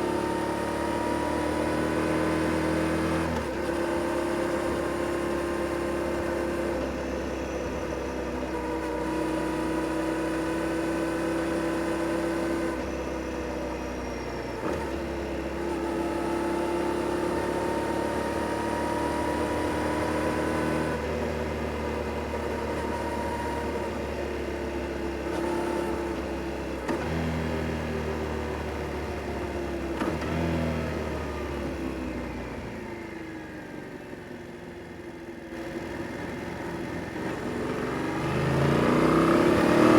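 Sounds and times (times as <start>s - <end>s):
motorcycle engine revving: 35.5s - 39.9s.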